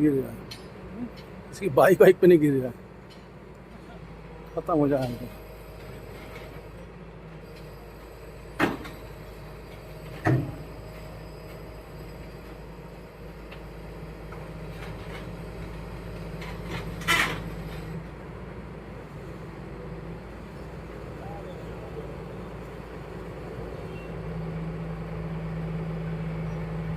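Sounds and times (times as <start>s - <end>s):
excavator diesel engine running: 0.0s - 26.9s.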